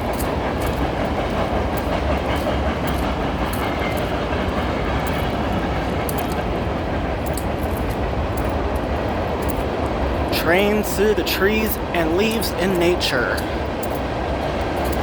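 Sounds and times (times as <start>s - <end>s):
train rumbling past: 0.0s - 15.0s
faint clicks: 0.2s - 9.7s.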